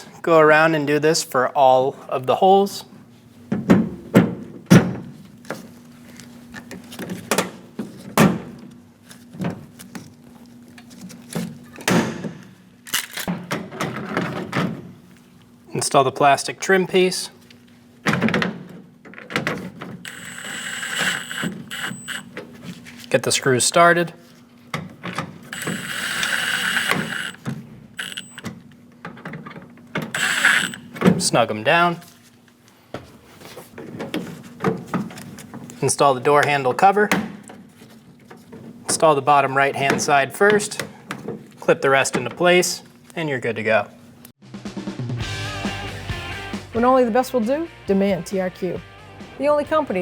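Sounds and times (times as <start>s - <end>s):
power screwdriver whirring: 20.0s - 22.3s, 25.5s - 28.4s, 30.1s - 30.9s.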